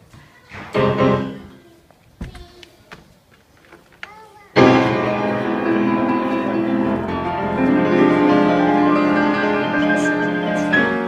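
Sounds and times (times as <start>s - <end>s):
piano playing slow chords: 4.6s - 11.0s.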